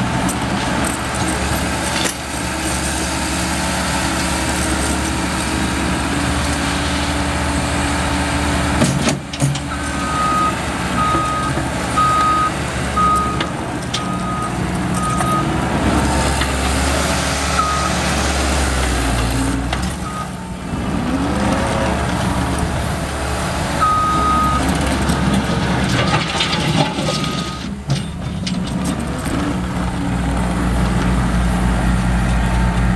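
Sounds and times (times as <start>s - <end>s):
diesel engine running: 0.0s - 32.9s
backup alarm beeps: 23.8s - 24.6s.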